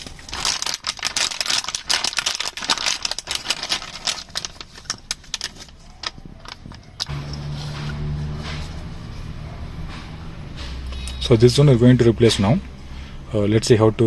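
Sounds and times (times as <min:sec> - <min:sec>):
packaging crinkling: 0:00.0 - 0:07.4.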